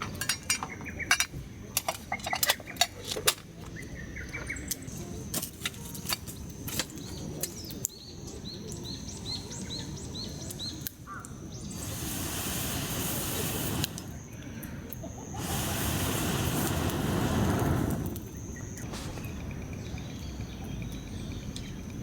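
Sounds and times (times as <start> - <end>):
campfire crackling: 10.4 - 21.3
hiss: 11.6 - 14.2, 15.2 - 20.3.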